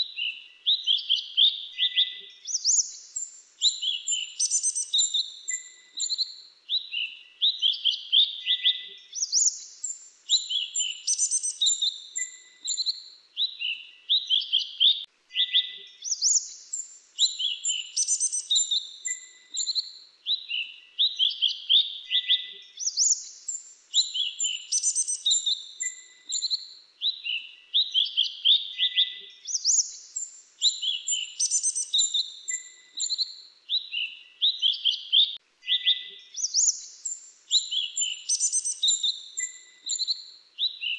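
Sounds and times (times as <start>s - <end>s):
bird chirping high and sharp: 2.5s - 6.3s, 9.2s - 13.0s, 15.5s - 19.8s, 22.8s - 26.6s, 29.5s - 33.3s, 35.7s - 40.2s.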